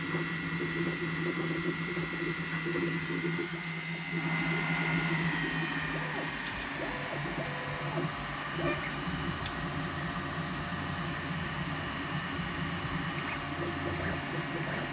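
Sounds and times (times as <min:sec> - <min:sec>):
low motor hum: 0:00.0 - 0:14.9
high-pitched printer squeak: 0:08.5 - 0:09.0.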